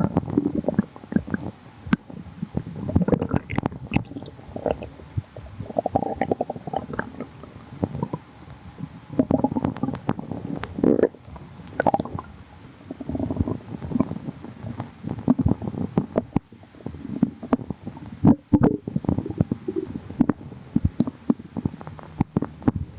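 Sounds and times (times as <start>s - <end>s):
stomach growling and gurgling: 0.0s - 22.9s.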